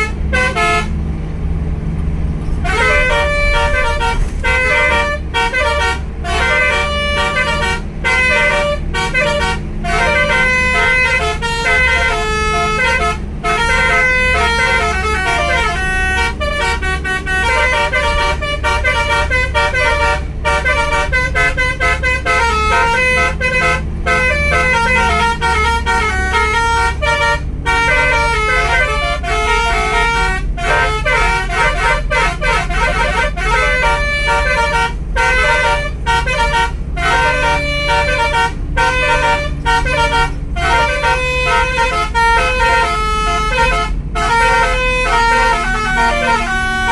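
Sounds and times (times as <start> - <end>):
bus horn playing a tune: 0.0 - 1.3, 2.2 - 46.9
bus engine rumbling: 0.0 - 46.9.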